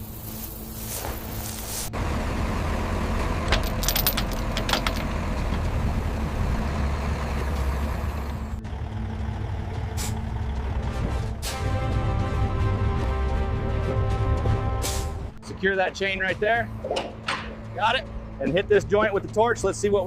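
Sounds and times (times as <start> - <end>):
heavy vehicle engine rumbling: 0.0 - 20.0
metallic clicks and knocks: 3.5 - 5.7, 16.8 - 17.7.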